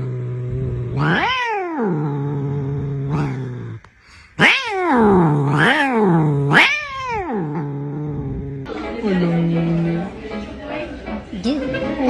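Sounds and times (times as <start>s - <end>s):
cat growling: 0.0s - 10.1s
cat yowling: 0.9s - 3.8s, 4.4s - 8.6s.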